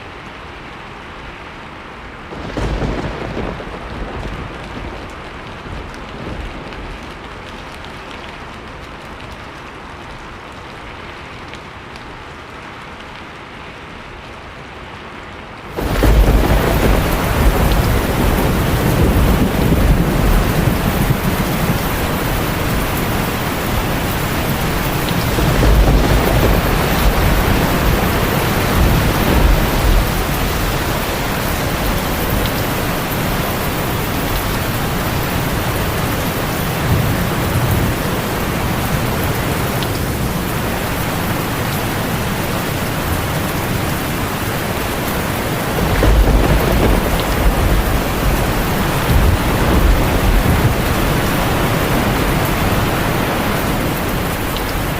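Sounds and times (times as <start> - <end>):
heavy rainfall: 0.0 - 54.9
low rolling thunder: 2.3 - 7.2, 15.8 - 43.8, 44.4 - 54.9.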